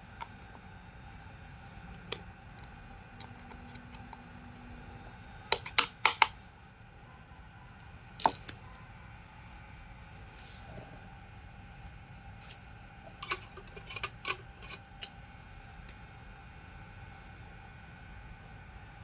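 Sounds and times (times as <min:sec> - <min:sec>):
small metal parts clinking: 0:08.1 - 0:08.5, 0:12.4 - 0:15.1.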